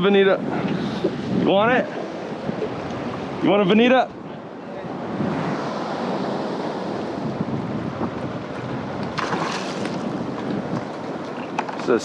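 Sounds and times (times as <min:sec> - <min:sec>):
wind buffeting microphone: 0:00.0 - 0:12.0
sea water washing around boat: 0:04.9 - 0:12.0.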